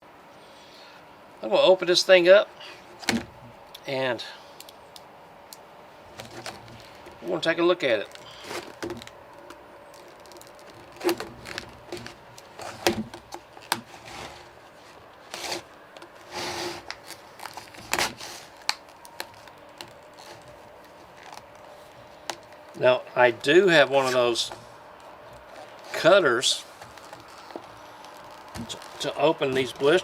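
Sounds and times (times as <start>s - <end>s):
plastic packaging crackling: 6.1s - 30.0s.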